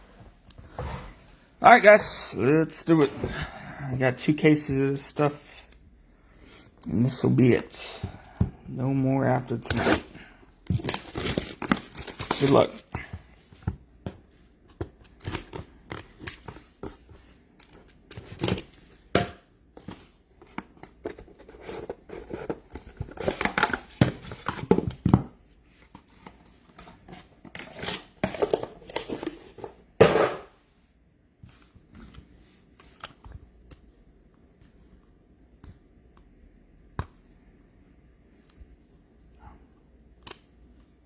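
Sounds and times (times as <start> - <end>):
plastic wrapping crinkling: 10.7 - 12.9
tearing shrink wrap and cardboard: 10.7 - 12.9.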